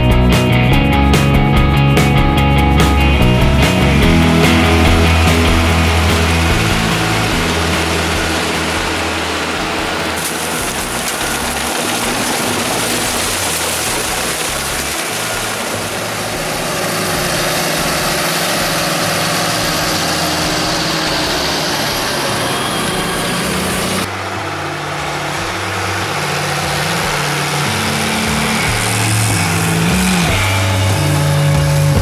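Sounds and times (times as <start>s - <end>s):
diesel farm machinery engine: 0.0s - 32.0s.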